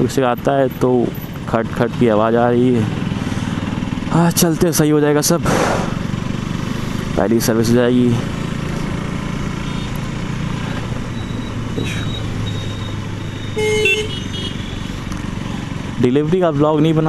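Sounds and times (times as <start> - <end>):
motorcycle engine riding: 0.0 - 17.0
road noise: 0.0 - 17.0
vehicle horn honking: 9.6 - 10.0, 13.4 - 15.1.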